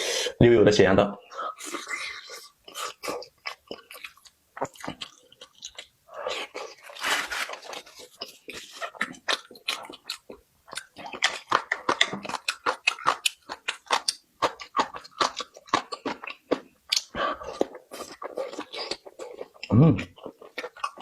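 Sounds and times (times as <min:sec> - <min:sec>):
person chewing crunchy food: 0:01.5 - 0:21.0.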